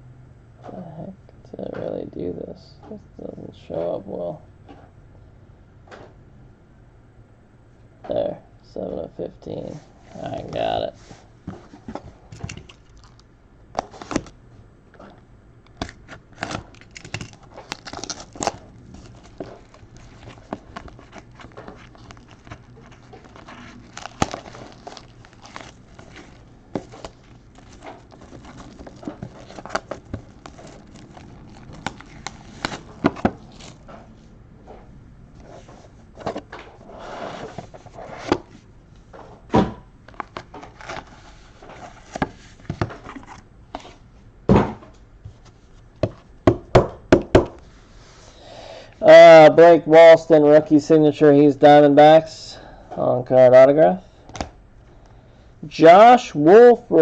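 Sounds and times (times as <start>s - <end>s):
cards rustling: 15.7s - 34.2s, 40.1s - 44.0s.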